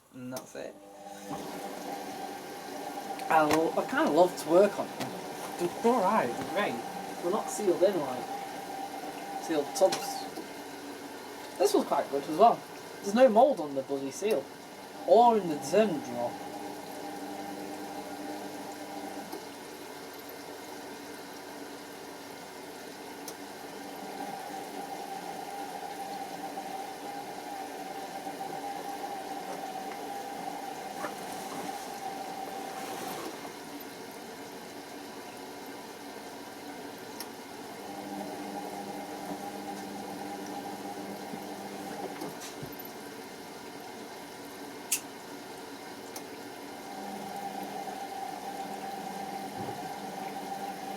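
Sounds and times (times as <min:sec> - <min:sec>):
washing machine drum humming: 0:00.2 - 0:20.4, 0:23.2 - 0:50.9
water rushing: 0:01.0 - 0:19.3, 0:23.8 - 0:34.2.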